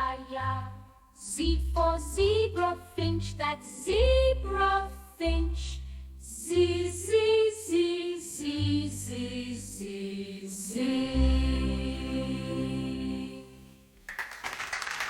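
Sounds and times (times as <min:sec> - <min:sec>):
children's song music: 0:00.0 - 0:14.0.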